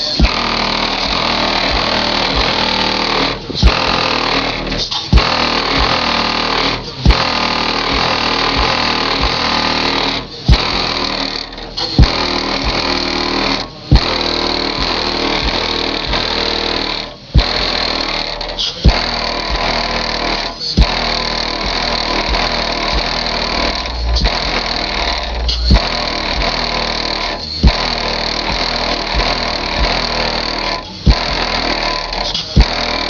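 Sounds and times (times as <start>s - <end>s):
dense buzzy din: 0.0s - 33.0s
heavy bass hits: 0.0s - 33.0s
hip-hop track through subwoofers: 0.0s - 33.0s.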